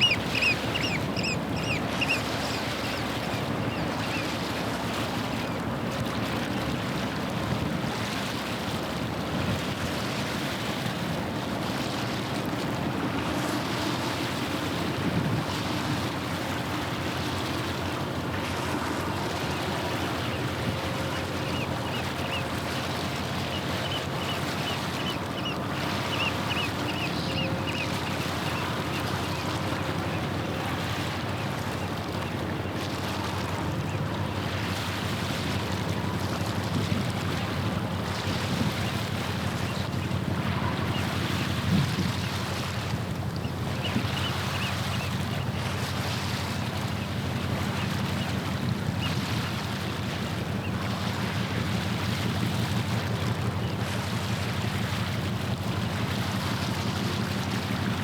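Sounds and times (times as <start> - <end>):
bird calling: 0.0 - 4.4, 20.2 - 30.2
ship engine drone: 0.0 - 41.9
wind: 0.0 - 58.0.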